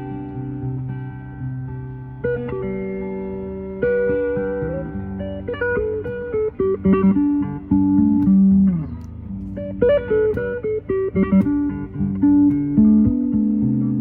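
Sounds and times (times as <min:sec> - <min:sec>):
guitar plucked notes: 0:00.0 - 0:14.0.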